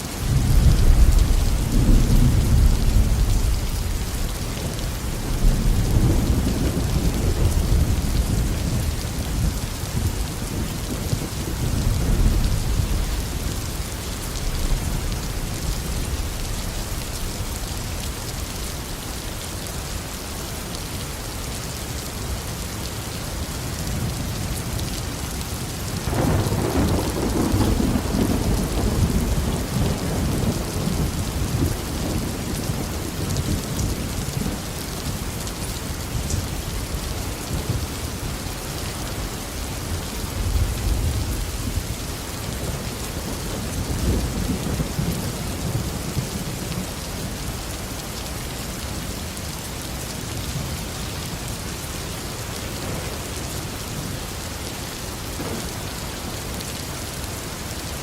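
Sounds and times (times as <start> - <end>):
rain falling: 0.0 - 58.0
thunder rumbling: 0.1 - 18.1, 25.9 - 34.7.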